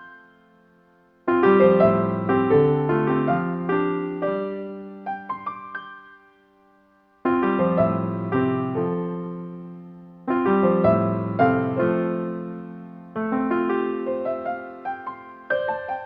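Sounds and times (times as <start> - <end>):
piano chords and notes: 0.0 - 16.0.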